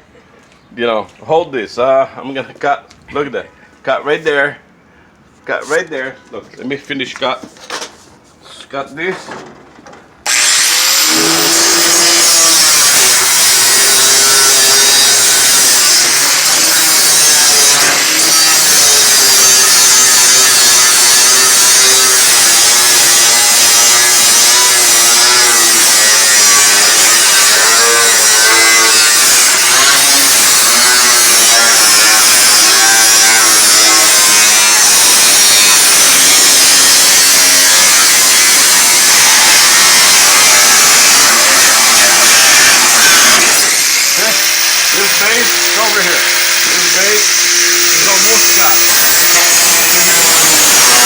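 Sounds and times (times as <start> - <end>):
power tool cutting metal: 10.2 - 51.0.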